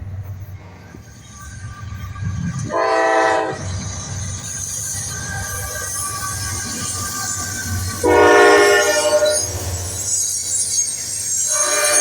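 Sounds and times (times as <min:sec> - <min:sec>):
hiss of passing train: 0:00.0 - 0:12.0
train horn blast: 0:02.7 - 0:03.6, 0:08.0 - 0:09.7.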